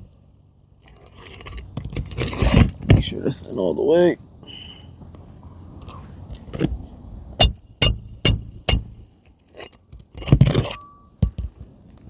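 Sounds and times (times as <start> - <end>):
scraping rustle: 0.8 - 3.0.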